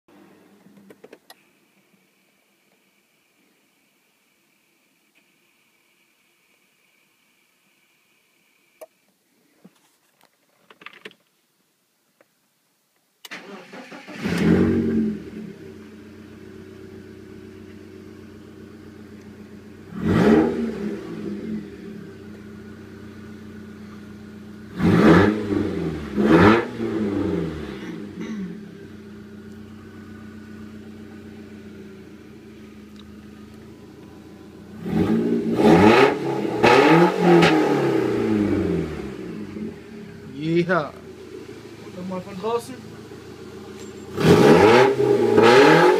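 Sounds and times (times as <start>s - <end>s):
car engine starting and idling: 13.2s - 45.9s
engine revving: 13.3s - 45.9s.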